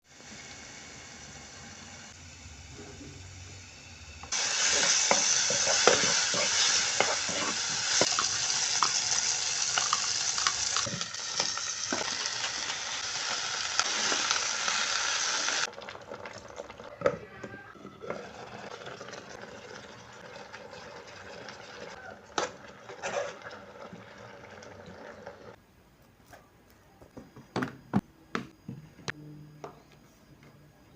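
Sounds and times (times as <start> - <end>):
food sizzling in a frying pan: 0.0 - 17.3.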